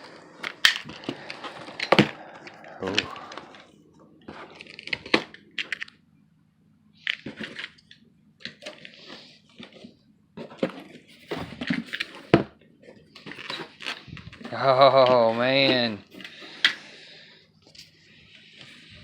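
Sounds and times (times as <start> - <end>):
cardboard and packing rustling: 0.0 - 5.9, 8.5 - 16.8.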